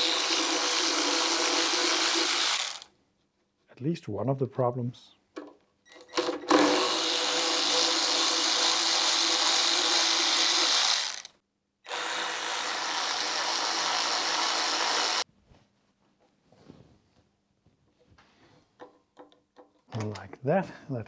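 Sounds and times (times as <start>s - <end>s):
power drill running: 0.0s - 2.9s, 5.9s - 11.3s, 11.9s - 15.2s.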